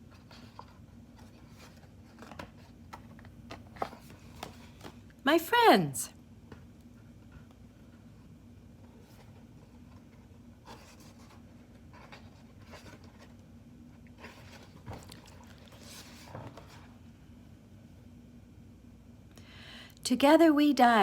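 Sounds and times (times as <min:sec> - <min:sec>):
book pages rustling: 0:00.1 - 0:05.1, 0:08.8 - 0:13.4, 0:14.0 - 0:17.0.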